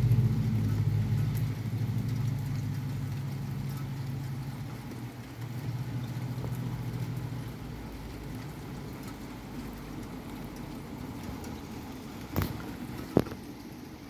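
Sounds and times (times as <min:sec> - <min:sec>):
car engine running: 0:00.0 - 0:10.1
steady rain hiss: 0:00.0 - 0:14.0.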